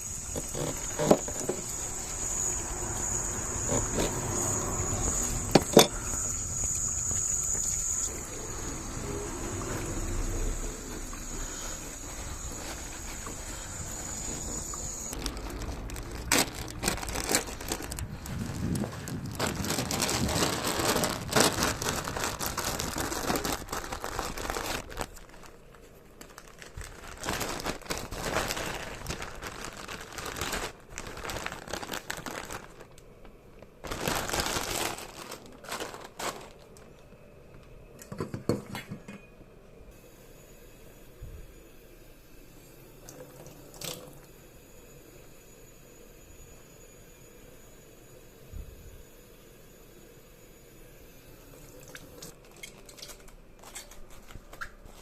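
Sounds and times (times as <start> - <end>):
packaging crinkling and rustling: 0.2 - 6.4, 9.5 - 37.7, 51.8 - 55.0.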